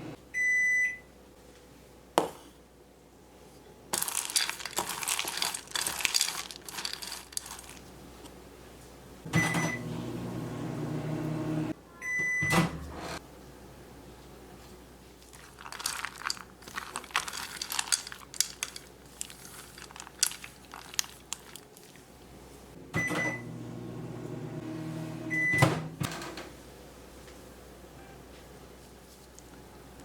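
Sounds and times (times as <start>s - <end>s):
microwave beep: 0.4s - 1.1s, 9.3s - 12.8s, 23.0s - 25.9s, 28.0s - 28.2s
bowl clicking and scraping: 4.0s - 7.8s, 15.4s - 22.0s
microwave oven humming: 9.3s - 13.2s, 22.8s - 26.3s.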